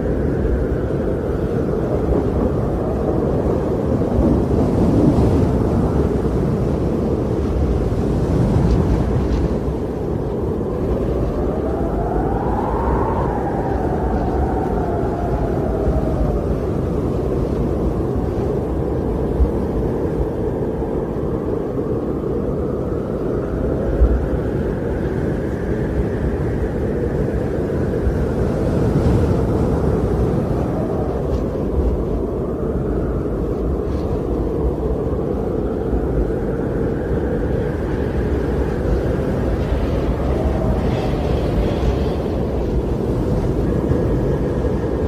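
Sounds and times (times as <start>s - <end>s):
strong wind blowing: 0.0s - 45.0s
low thumps of gusts: 27.9s - 45.0s.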